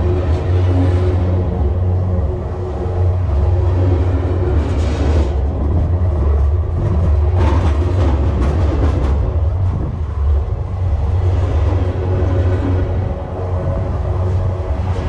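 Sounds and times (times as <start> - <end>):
train wheels rumbling on track: 0.0 - 15.0.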